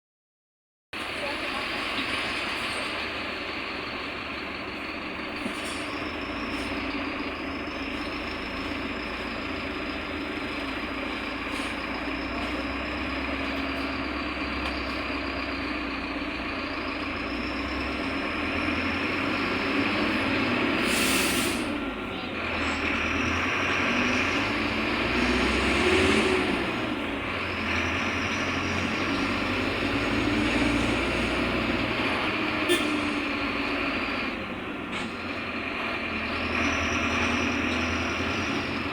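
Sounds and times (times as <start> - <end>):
bus engine running: 1.0 - 38.9
air brake hiss: 20.8 - 21.8.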